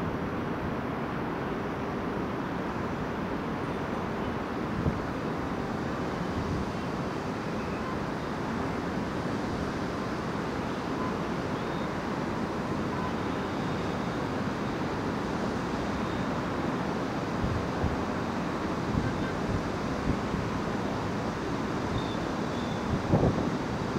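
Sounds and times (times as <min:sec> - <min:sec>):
city road traffic: 0:00.0 - 0:23.9.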